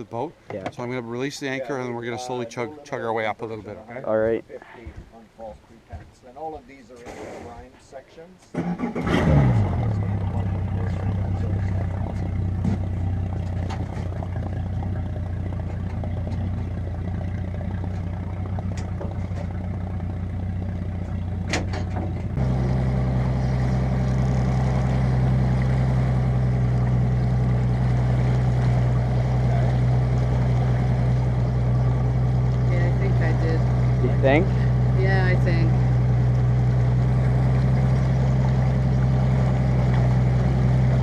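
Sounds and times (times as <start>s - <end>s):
boat engine running: 9.0s - 41.0s.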